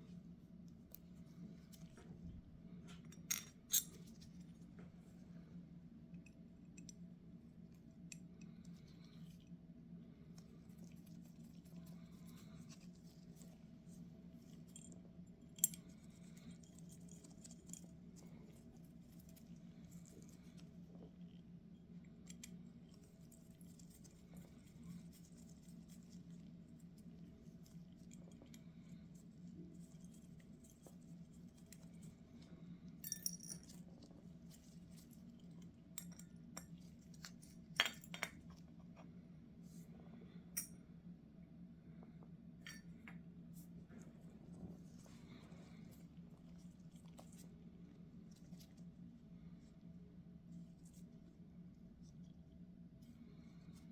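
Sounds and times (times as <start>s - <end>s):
metal parts and tools clinking: 3.1s - 4.0s, 33.0s - 33.7s.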